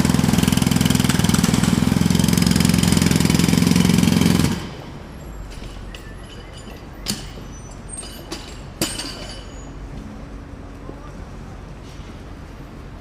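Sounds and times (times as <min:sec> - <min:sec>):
jackhammer hammering: 0:00.0 - 0:07.5.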